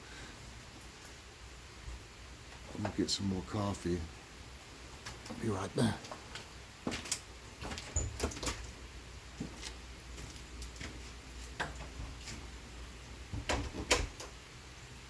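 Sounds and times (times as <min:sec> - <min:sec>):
rain hissing: 0:00.0 - 0:13.5
door opening and shutting: 0:07.0 - 0:08.7, 0:13.3 - 0:14.4.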